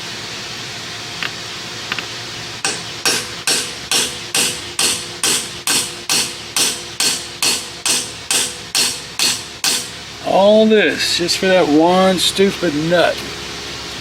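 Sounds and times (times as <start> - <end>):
hammer blows on metal: 2.6 - 10.0.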